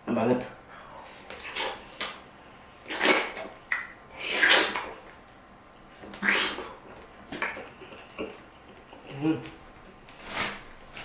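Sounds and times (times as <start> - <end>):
person eating noisily: 0.9 - 2.2, 2.8 - 5.1, 6.1 - 9.6.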